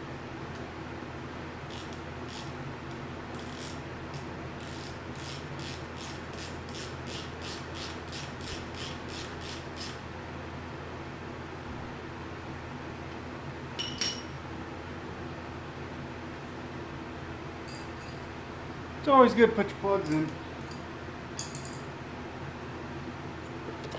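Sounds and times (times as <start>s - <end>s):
ratchet wrench clicking: 1.7s - 2.5s, 4.6s - 10.0s.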